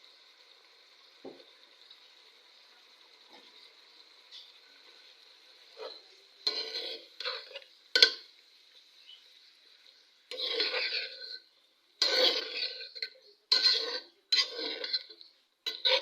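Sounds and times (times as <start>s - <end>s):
spoon stirring in a pot: 3.2s - 8.4s, 9.7s - 16.0s.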